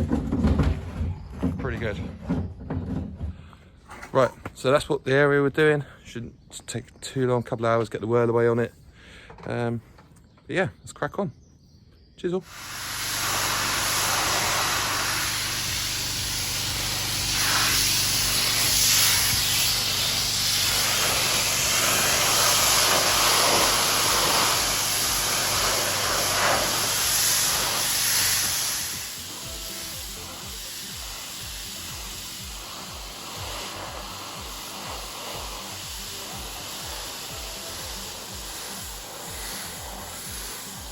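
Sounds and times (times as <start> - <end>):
pressure washer spraying pavement: 12.5 - 40.9.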